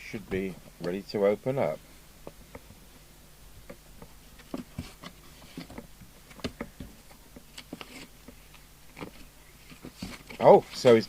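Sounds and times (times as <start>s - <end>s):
cardboard and paper rustling: 4.0s - 11.0s.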